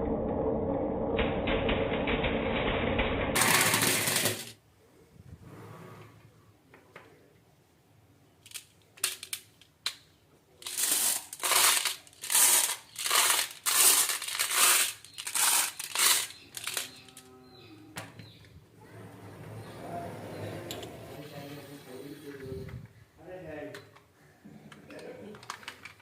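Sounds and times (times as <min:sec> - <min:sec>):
marbles clicking: 0:03.4 - 0:04.6, 0:10.6 - 0:17.3
marbles rolling on wood: 0:03.4 - 0:04.6, 0:10.6 - 0:17.3.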